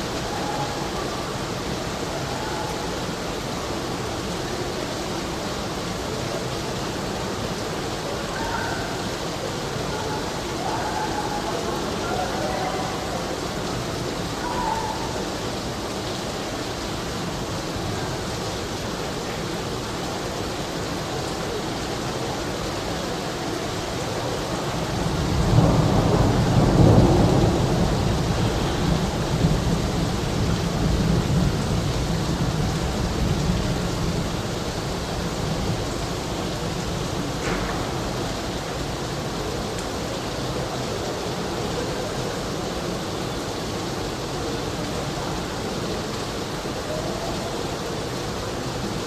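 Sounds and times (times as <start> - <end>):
steady rain: 0.0 - 49.0
thunder rumbling: 24.9 - 34.0.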